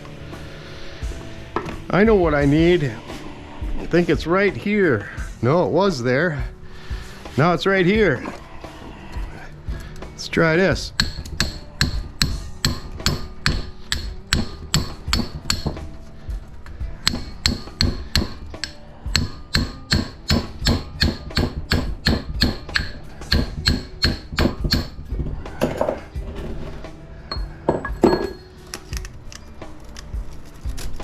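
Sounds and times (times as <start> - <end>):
hammer blows on metal: 10.8 - 16.0, 16.9 - 25.8.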